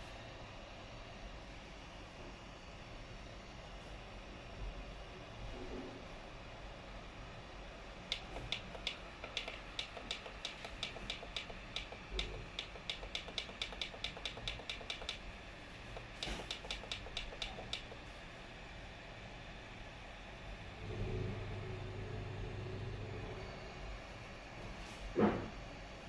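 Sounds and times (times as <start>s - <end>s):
rapid light clicks: 8.1s - 15.3s, 15.9s - 18.0s.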